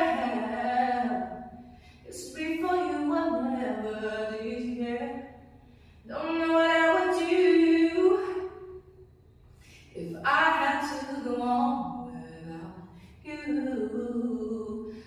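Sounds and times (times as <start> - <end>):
woman singing a cappella: 0.0 - 5.4, 6.0 - 8.7, 9.7 - 15.0
woman breathing in: 1.6 - 2.1, 5.5 - 6.1.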